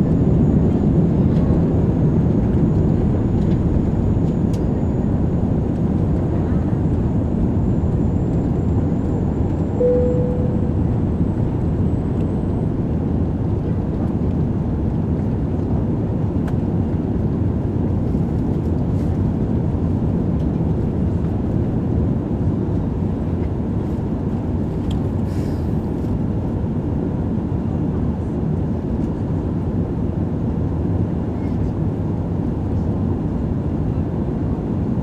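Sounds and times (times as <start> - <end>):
jet engine roar in cabin: 0.0 - 35.0
single tone: 9.8 - 11.6.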